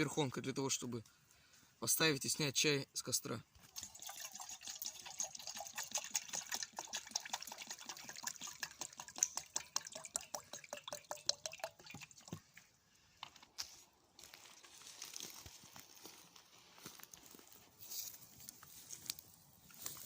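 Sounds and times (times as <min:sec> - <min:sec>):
water pouring into a mug: 0:03.7 - 0:12.4.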